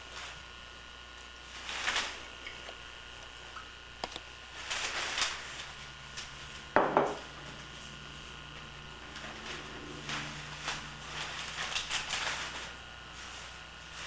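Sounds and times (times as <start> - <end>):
knock on counter: 6.8 - 7.3.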